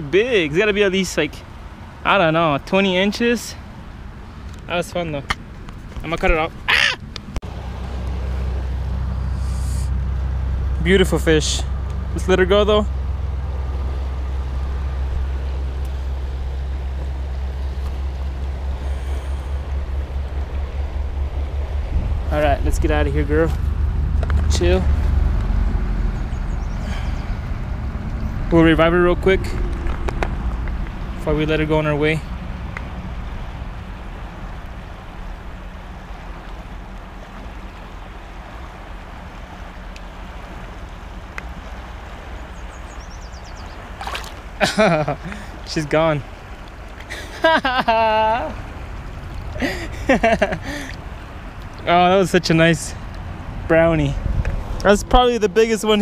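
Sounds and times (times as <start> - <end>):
river flowing: 0.0 - 56.0
wind rumble on microphone: 12.9 - 44.0, 53.0 - 56.0.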